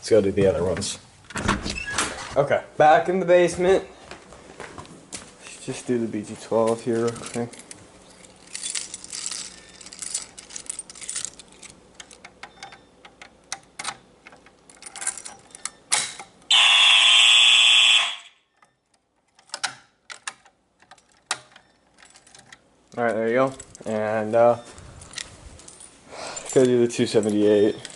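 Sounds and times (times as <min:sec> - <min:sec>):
fire alarm horn: 0:16.5 - 0:18.5.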